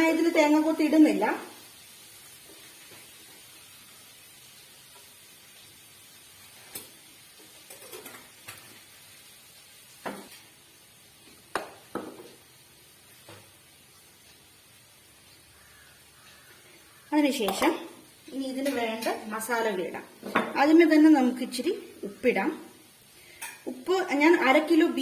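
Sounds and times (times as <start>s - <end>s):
faint steady hiss: 0.0s - 25.0s
spoon scraping and tapping cookware: 23.3s - 23.6s.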